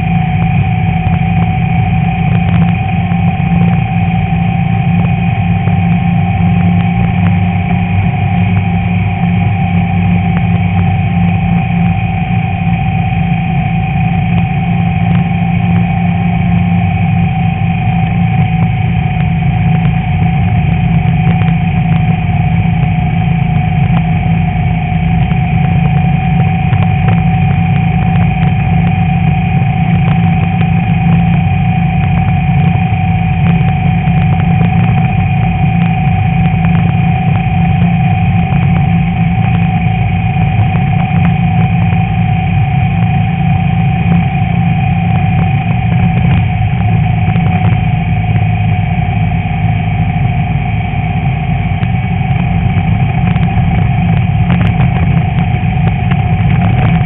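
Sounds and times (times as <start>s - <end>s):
car engine running: 0.0s - 57.0s.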